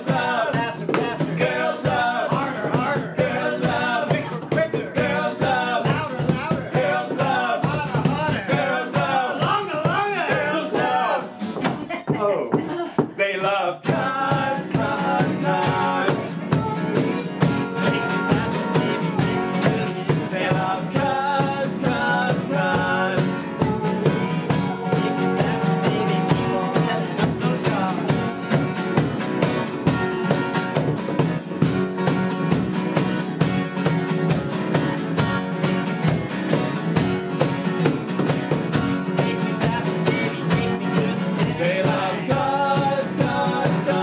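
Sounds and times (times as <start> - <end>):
person singing: 0.0 - 12.0, 12.6 - 29.1, 39.0 - 44.0
drum kit beat: 0.0 - 13.2, 13.8 - 44.0
electric guitars: 14.2 - 44.0.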